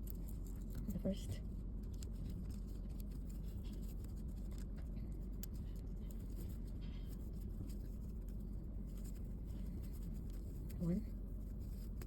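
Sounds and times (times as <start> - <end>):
low background hum: 0.0 - 12.0
crochet hook scratching yarn: 1.9 - 12.0.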